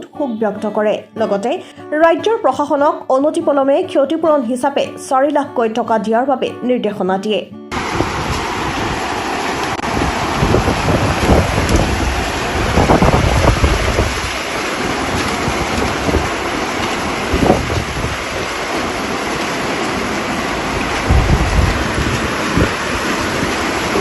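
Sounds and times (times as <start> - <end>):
heavy rain: 7.7 - 24.0
strong wind: 7.7 - 24.0
wind gusts buffeting microphone: 7.7 - 24.0.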